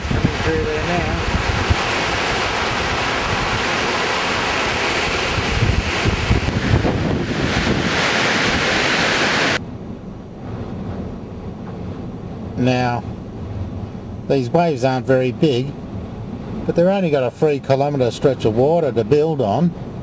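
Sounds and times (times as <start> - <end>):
wind buffeting on microphone: 0.0 - 14.6
gusting wind: 0.0 - 20.0.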